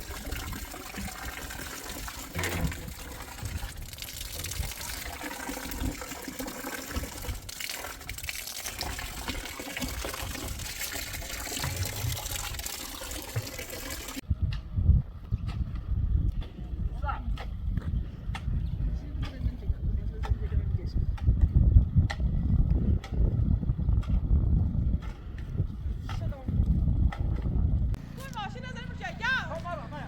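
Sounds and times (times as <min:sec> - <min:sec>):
water rushing: 0:00.0 - 0:14.2.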